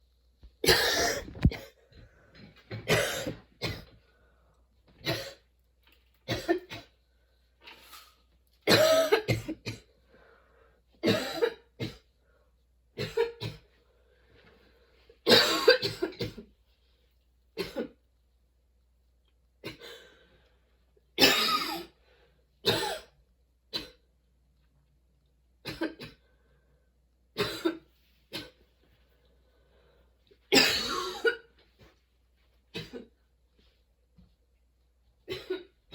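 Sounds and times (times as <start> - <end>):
woman coughing: 0.6 - 1.8, 2.9 - 3.9, 8.7 - 9.9, 11.0 - 12.0, 15.3 - 16.5, 21.2 - 21.9, 22.7 - 23.1, 30.5 - 31.5, 35.3 - 35.8.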